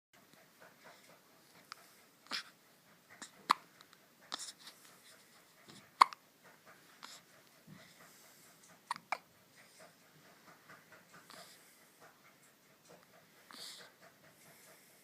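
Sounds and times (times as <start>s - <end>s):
baby soft breathing: 0.8s - 2.6s, 3.2s - 10.6s, 11.2s - 12.3s, 13.2s - 15.0s
baby hiccupping: 2.2s - 2.6s, 3.2s - 3.7s, 4.3s - 4.7s, 6.0s - 6.2s, 8.8s - 9.3s.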